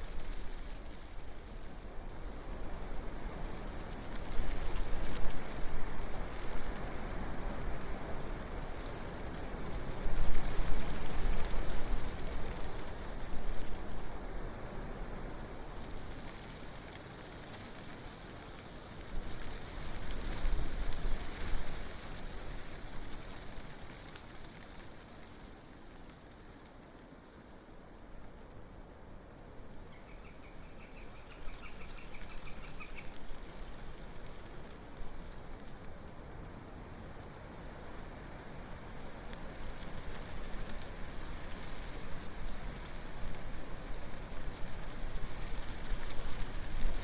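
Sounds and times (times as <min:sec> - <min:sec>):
wind rustling leaves: 0:00.0 - 0:47.0
small bird chirping trill: 0:29.9 - 0:33.2.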